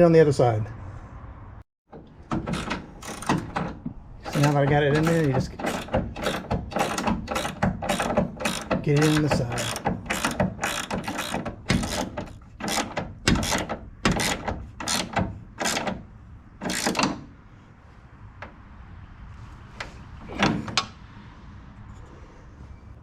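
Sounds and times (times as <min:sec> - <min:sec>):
ratchet wrench clicking: 0:02.5 - 0:03.6, 0:04.3 - 0:16.0, 0:16.6 - 0:17.2.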